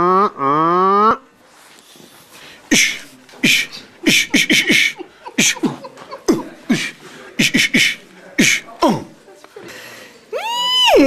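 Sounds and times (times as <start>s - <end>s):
person beatboxing: 2.7s - 9.0s.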